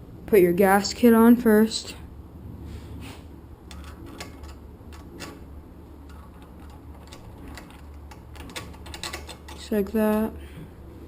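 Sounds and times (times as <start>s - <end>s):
steady low hum: 0.0s - 11.0s
small parts clicking and tapping: 3.7s - 10.3s.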